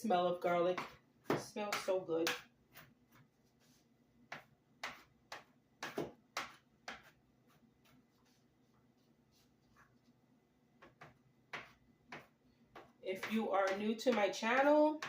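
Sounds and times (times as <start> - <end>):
knife chopping on cutting board: 4.3 - 7.2, 10.8 - 15.0.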